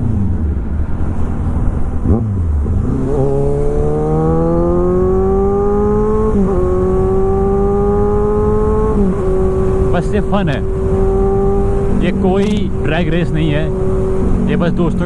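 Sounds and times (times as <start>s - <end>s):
motorcycle engine accelerating: 0.0s - 15.0s.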